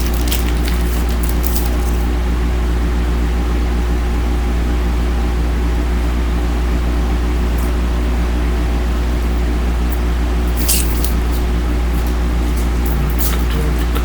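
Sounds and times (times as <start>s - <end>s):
buzzing tone: 12.8s - 14.0s
low hum: 12.8s - 14.0s.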